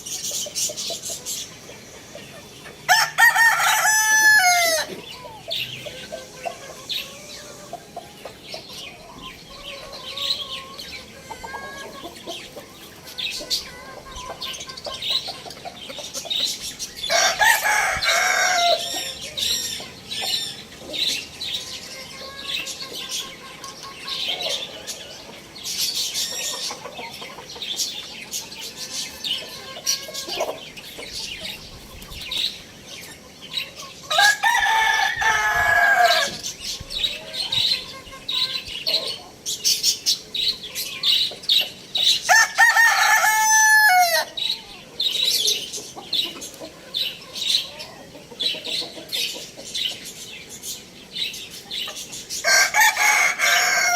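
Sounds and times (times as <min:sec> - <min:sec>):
chickens clucking: 0:00.0 - 0:53.9
loud drawn-out chicken call: 0:02.9 - 0:05.0, 0:34.1 - 0:36.4, 0:42.3 - 0:44.4, 0:52.4 - 0:53.9.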